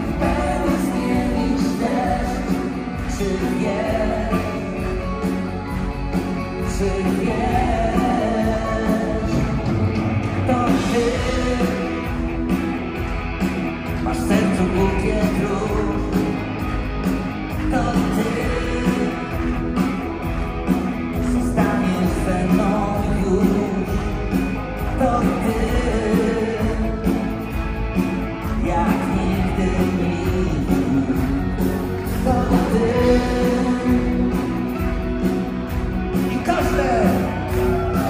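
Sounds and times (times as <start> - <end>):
pop-rock song with singing: 0.0 - 38.0.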